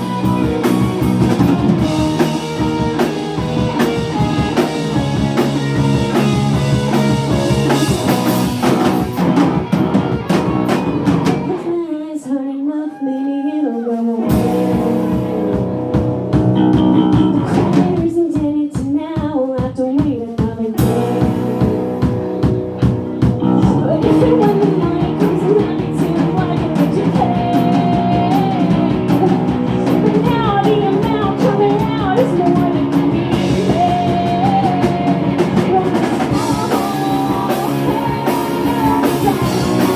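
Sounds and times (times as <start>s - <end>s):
live rock band playing: 0.0s - 11.8s, 14.2s - 18.1s, 20.8s - 39.9s
person singing: 11.2s - 15.7s, 16.6s - 39.9s.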